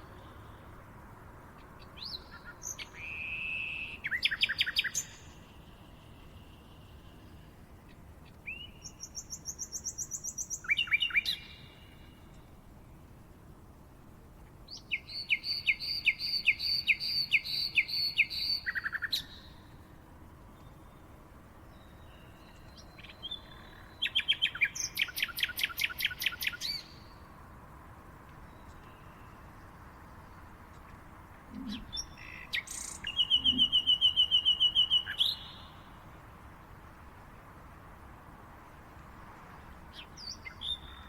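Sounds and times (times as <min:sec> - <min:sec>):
faint background hiss: 0:00.0 - 0:41.0
birds singing trills: 0:01.9 - 0:12.4, 0:21.7 - 0:27.2, 0:31.4 - 0:36.0, 0:39.9 - 0:41.0.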